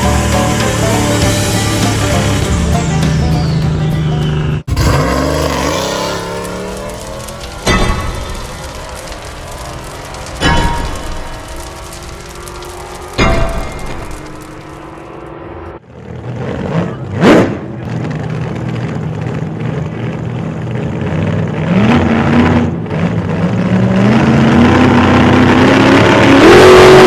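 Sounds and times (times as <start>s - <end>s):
car engine accelerating: 0.0s - 27.0s.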